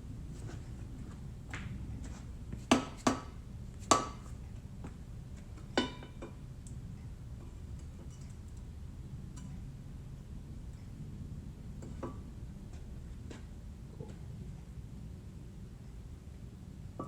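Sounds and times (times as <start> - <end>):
low hum: 0.0 - 2.6.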